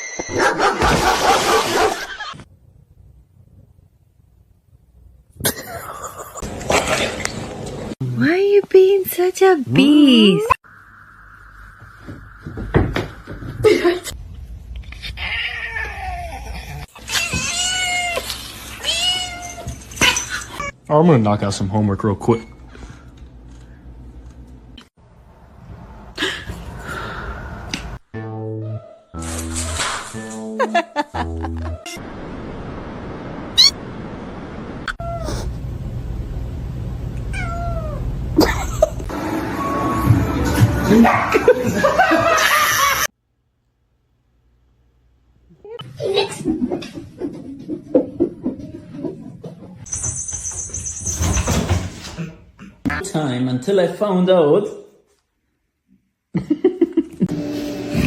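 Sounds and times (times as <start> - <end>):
cat meowing: 15.2 - 20.7, 37.3 - 38.0
cat chirping: 33.6 - 33.8.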